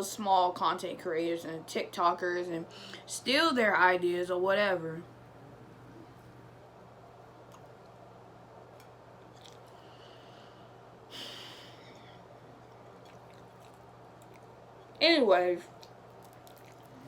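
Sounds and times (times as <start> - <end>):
steady low hum: 0.0 - 17.0
person chewing: 8.8 - 10.0, 12.3 - 15.0, 15.7 - 17.0.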